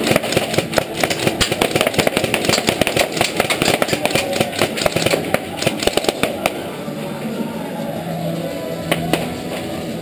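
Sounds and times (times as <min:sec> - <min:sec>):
airsoft guns firing: 0:00.0 - 0:06.6.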